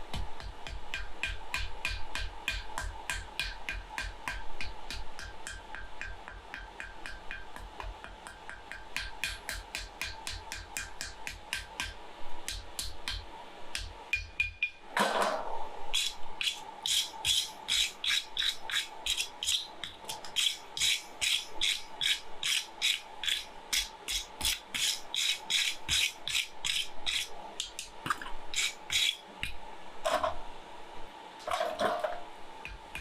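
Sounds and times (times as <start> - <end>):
rhythmic scraping on metal: 15.9 - 29.3.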